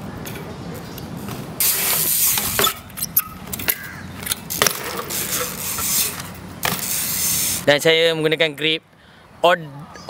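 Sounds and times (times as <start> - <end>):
bike clicks and rattles: 0.3 - 7.7.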